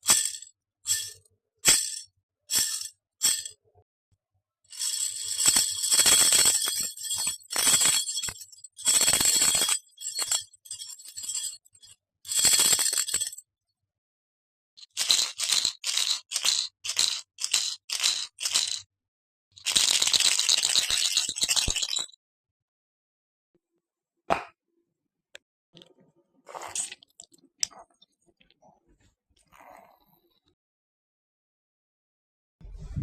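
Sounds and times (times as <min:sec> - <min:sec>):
small metal objects jingling: 0:00.0 - 0:03.5, 0:04.7 - 0:13.4.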